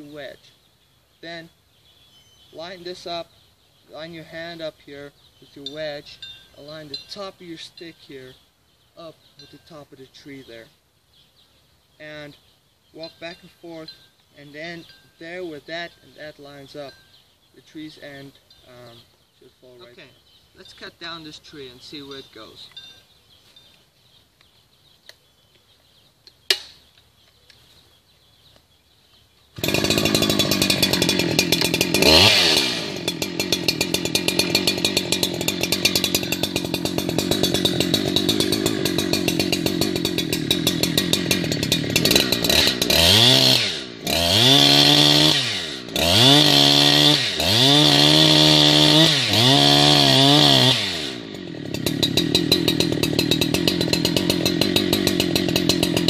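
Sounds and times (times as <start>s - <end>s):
chainsaw cutting wood: 29.5s - 56.0s.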